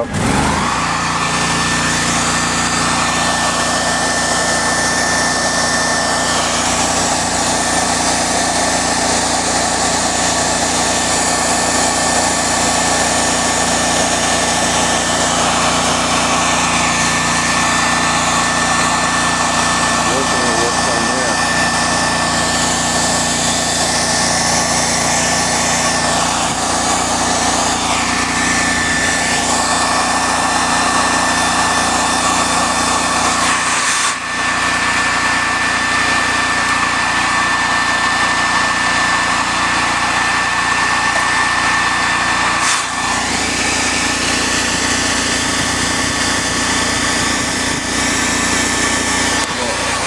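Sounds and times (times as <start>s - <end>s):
welder engine running: 0.0s - 50.0s
high whine: 14.1s - 31.2s.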